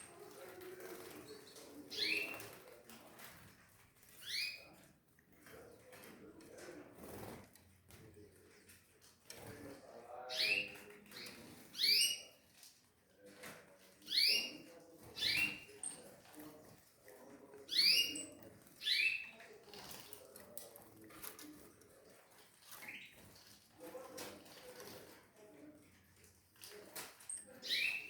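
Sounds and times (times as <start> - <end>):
canaries chirping: 0.0 - 3.3, 4.0 - 4.9, 9.4 - 12.6, 13.2 - 20.3, 22.6 - 25.1, 26.6 - 28.0.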